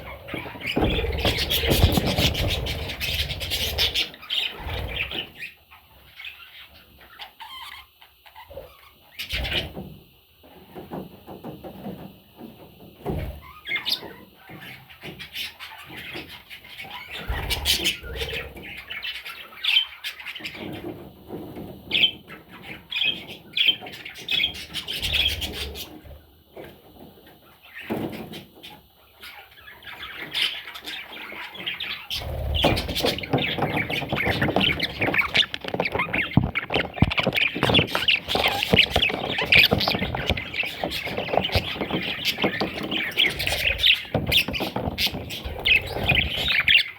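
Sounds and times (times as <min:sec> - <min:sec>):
budgerigars chattering and squawking: 0:00.0 - 0:09.7, 0:21.9 - 0:26.0, 0:27.6 - 0:46.9.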